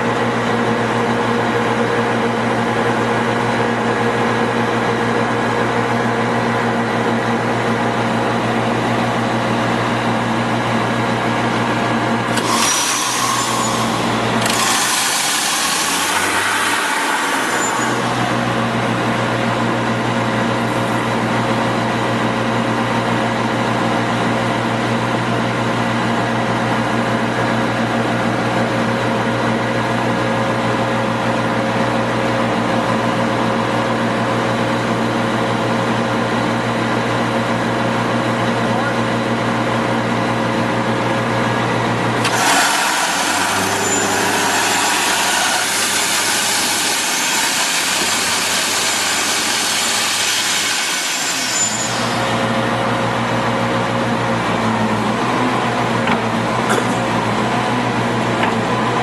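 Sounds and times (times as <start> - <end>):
diesel engine humming: 0.0 - 49.0, 51.9 - 59.0
rush of hiss: 42.6 - 52.2.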